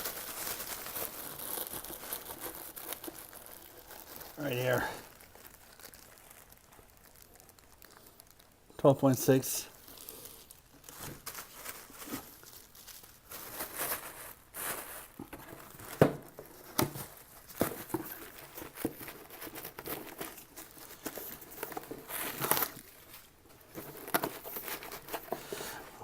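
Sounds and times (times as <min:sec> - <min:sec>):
packaging crinkling and tearing: 0:00.0 - 0:26.0.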